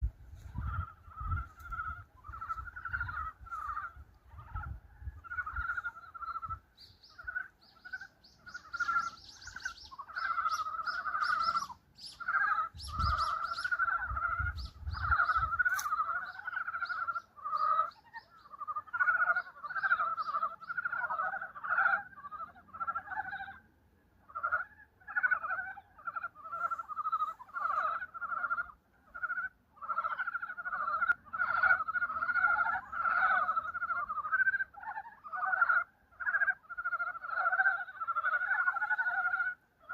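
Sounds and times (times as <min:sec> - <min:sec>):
frogs croaking: 0:00.0 - 0:39.9.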